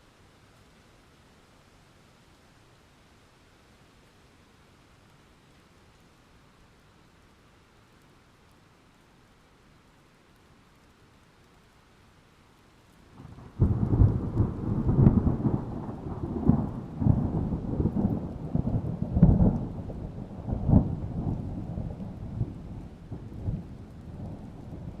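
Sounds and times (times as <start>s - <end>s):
rolling thunder rumble: 13.2s - 25.0s
thunder clap: 13.2s - 25.0s.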